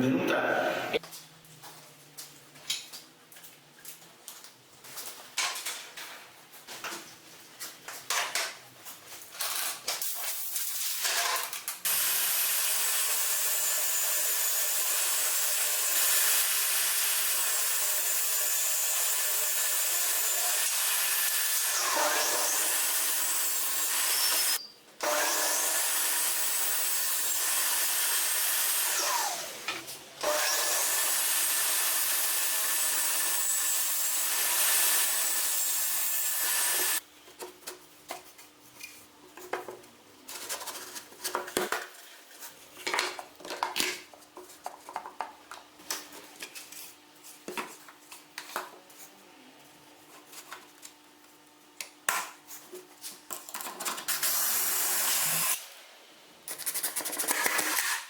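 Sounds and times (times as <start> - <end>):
power tool cutting wood: 11.9 - 37.0, 54.1 - 55.7.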